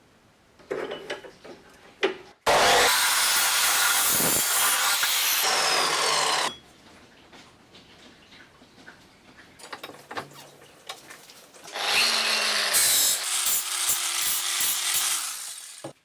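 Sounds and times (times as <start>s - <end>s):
power tool grinding: 2.5s - 6.5s, 11.7s - 16.0s.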